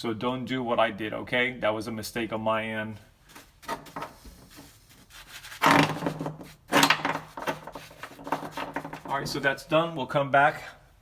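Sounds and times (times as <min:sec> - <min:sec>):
rough strokes: 0:03.3 - 0:09.5
rubbing gel on metal: 0:03.3 - 0:09.7.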